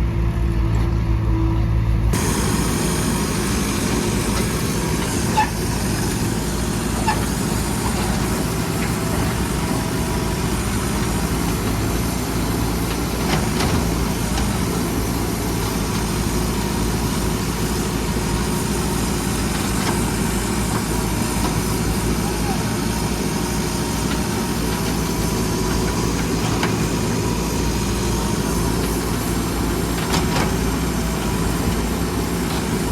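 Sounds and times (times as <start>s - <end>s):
diesel engine running: 0.0s - 32.9s
knocks and clatters: 3.9s - 16.4s.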